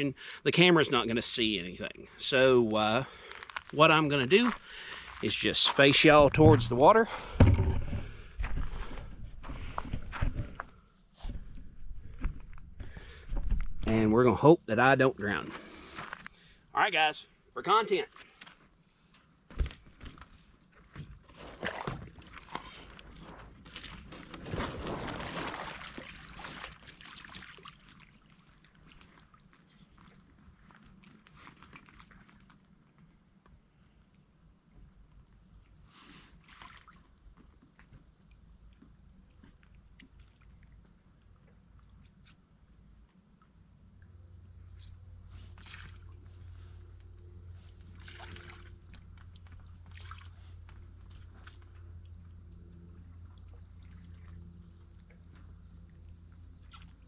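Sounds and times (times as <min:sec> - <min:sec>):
faint water sloshes: 0:21.2 - 0:32.7, 0:36.3 - 0:37.8, 0:44.0 - 0:57.0
loud splashing and rustling: 0:21.3 - 0:29.4, 0:47.9 - 0:50.6.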